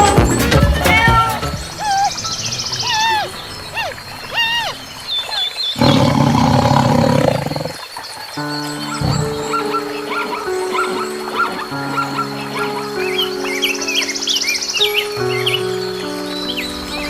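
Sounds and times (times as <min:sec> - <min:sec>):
background music: 0:00.0 - 0:03.0, 0:08.4 - 0:17.0
big cat roaring: 0:05.8 - 0:07.8, 0:09.0 - 0:09.5.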